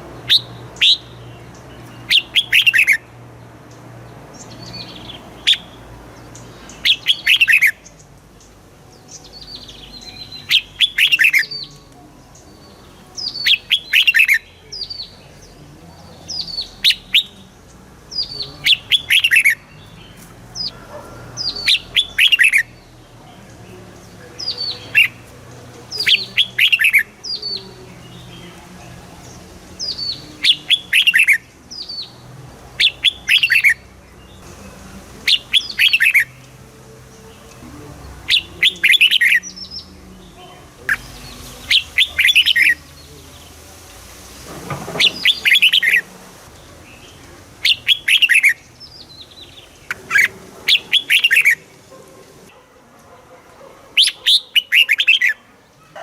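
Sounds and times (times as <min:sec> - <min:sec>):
bulbul singing: 0:00.0 - 0:56.0.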